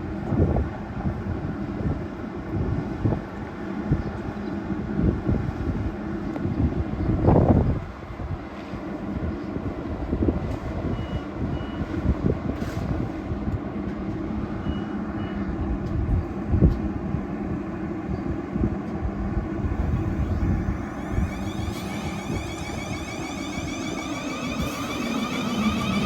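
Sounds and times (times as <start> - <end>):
electric train rumbling: 19.1 - 26.0
wind buffeting microphone: 19.1 - 26.0
short high beeps: 19.8 - 26.0.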